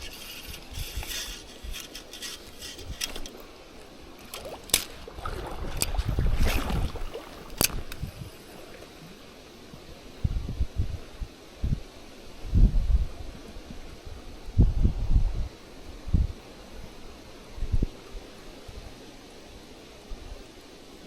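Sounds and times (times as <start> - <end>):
water sloshing: 0.0 - 9.2
wind rumbling on microphone: 0.0 - 19.1.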